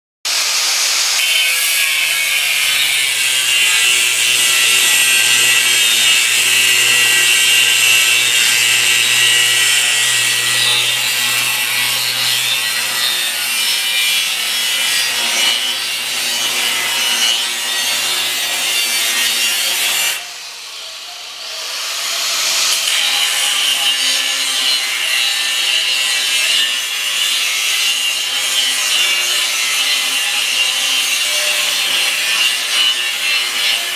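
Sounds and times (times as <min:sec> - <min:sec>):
power tool cutting: 0:00.3 - 0:33.9.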